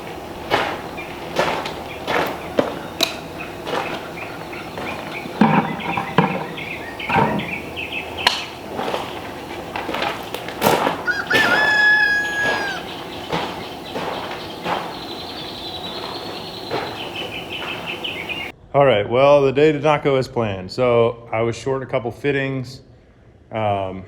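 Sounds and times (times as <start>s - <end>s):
chickens clucking: 0.0s - 18.5s
rooster crowing: 10.3s - 18.5s.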